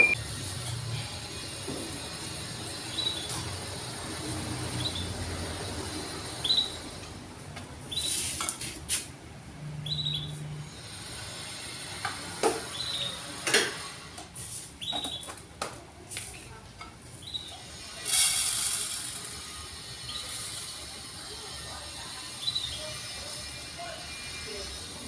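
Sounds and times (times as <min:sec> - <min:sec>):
bird chirping: 0:09.8 - 0:10.4.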